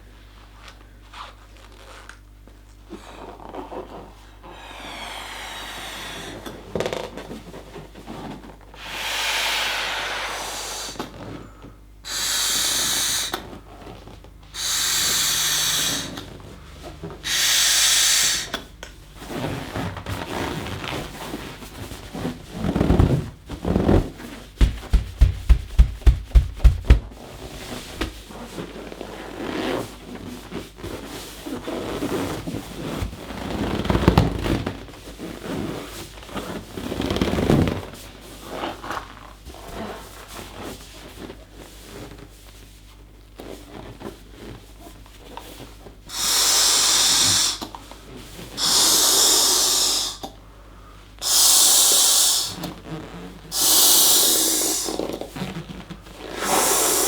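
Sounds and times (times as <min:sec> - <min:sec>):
breaths blown into balloon: 0:04.4 - 0:06.6, 0:08.8 - 0:11.4, 0:12.1 - 0:13.6, 0:14.5 - 0:18.7, 0:22.5 - 0:27.2, 0:27.9 - 0:28.2, 0:46.1 - 0:47.8, 0:48.5 - 0:50.4, 0:51.2 - 0:55.2, 0:56.2 - 0:57.0
balloon rubber rubbing and squeaking: 0:12.1 - 0:16.4, 0:17.3 - 0:18.5, 0:19.2 - 0:28.3, 0:46.1 - 0:47.6, 0:48.6 - 0:50.2, 0:51.2 - 0:57.0
thumps on balloon: 0:22.6 - 0:28.3.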